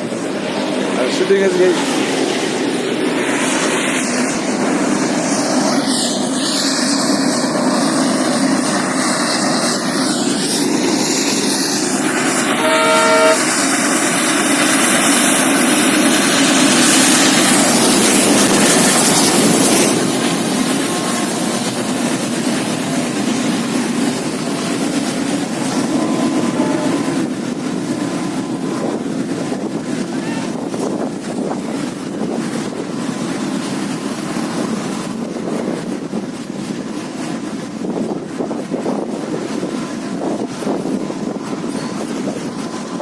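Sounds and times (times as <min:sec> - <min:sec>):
freight train rumbling and rattling: 0:00.0 - 0:43.0
train horn blast: 0:12.4 - 0:13.8, 0:25.7 - 0:27.3.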